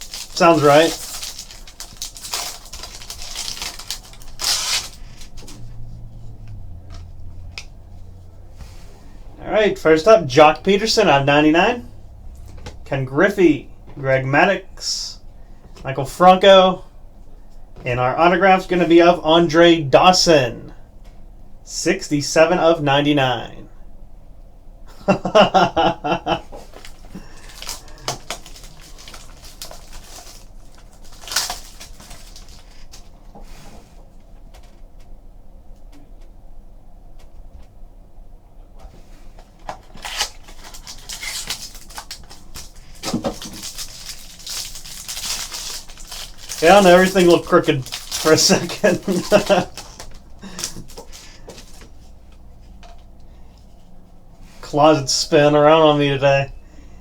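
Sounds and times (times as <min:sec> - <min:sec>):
wrapper crinkling: 0:00.0 - 0:05.6, 0:26.5 - 0:33.2, 0:39.6 - 0:52.2
card packaging rustling: 0:00.0 - 0:05.7, 0:26.1 - 0:33.2, 0:39.3 - 0:53.1
steady low hum: 0:00.0 - 0:57.0.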